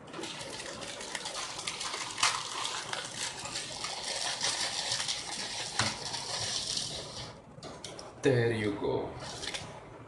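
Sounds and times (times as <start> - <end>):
water running from a tap: 0.1 - 7.4.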